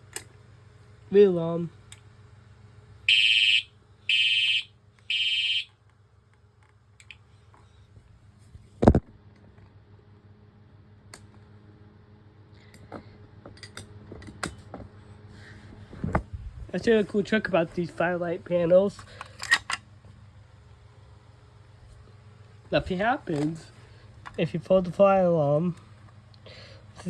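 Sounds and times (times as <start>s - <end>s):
faint steady hum: 0.0s - 27.0s
fire alarm tone pulses: 3.1s - 5.7s.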